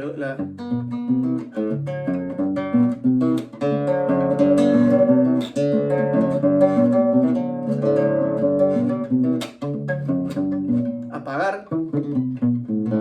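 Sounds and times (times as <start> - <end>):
fingerstyle acoustic guitar: 0.0 - 13.0
percussive damped guitar strokes: 3.4 - 9.6.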